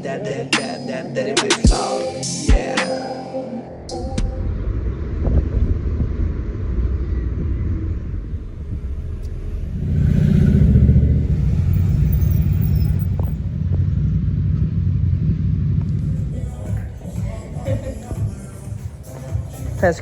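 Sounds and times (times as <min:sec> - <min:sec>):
car rumble: 0:04.1 - 0:19.1.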